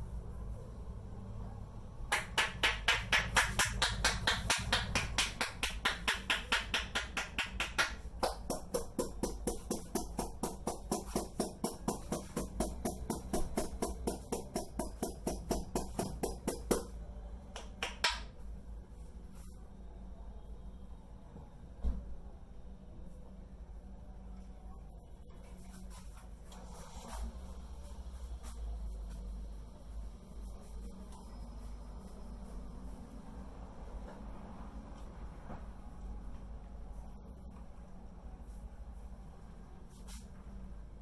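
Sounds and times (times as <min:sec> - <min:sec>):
hands tapping on head: 0:02.1 - 0:16.9.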